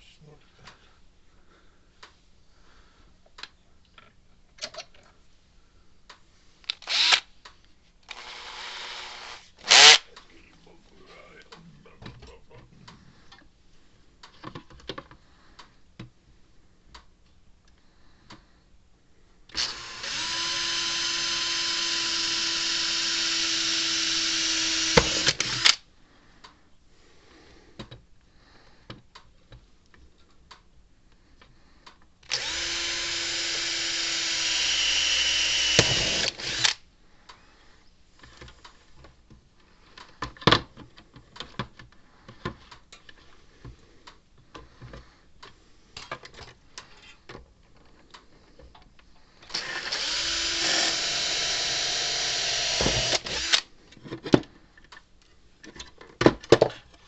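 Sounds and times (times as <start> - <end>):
power drill whining: 6.7 - 7.3, 8.1 - 10.1, 19.5 - 25.8, 32.3 - 36.8, 49.5 - 53.7.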